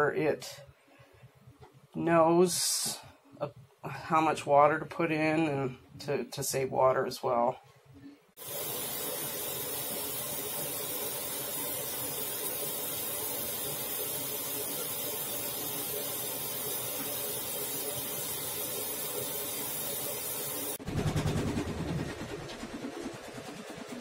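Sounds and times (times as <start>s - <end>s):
water hissing in washing machine: 8.4s - 24.0s
washing machine rumbling: 20.8s - 24.0s.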